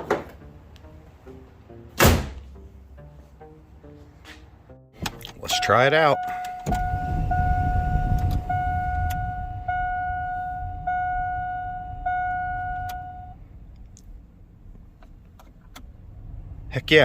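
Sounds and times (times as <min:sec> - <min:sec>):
dashboard warning chime: 0:05.2 - 0:13.4
blower fan rushing: 0:06.4 - 0:14.6.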